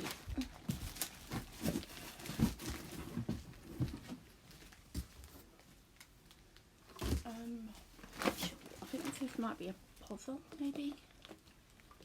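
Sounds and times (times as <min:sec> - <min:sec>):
packaging knocks and rustles: 0:00.0 - 0:05.6.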